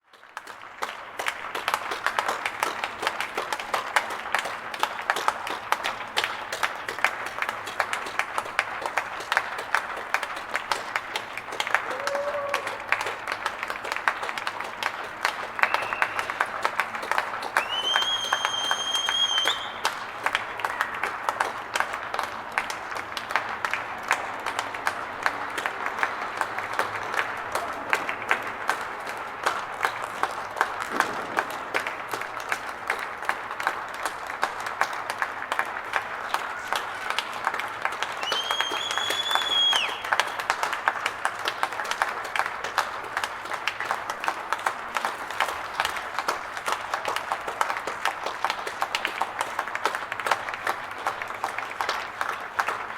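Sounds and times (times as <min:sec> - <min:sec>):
crowd applauding: 0:00.0 - 0:52.9
shrill whistle: 0:15.6 - 0:16.4, 0:17.6 - 0:19.8, 0:38.2 - 0:40.3.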